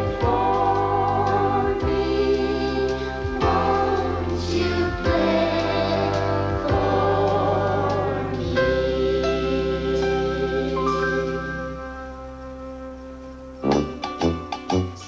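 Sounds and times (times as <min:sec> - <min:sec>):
group of voices singing: 0:00.0 - 0:11.8
bass line: 0:00.0 - 0:15.0
instrumental backing: 0:00.0 - 0:15.0.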